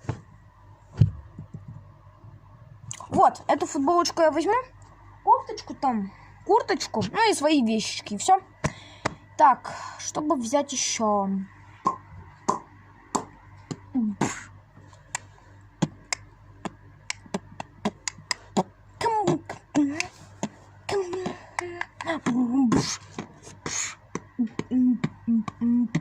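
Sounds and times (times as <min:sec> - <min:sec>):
boy beatboxing: 0:11.8 - 0:14.5, 0:15.1 - 0:26.0.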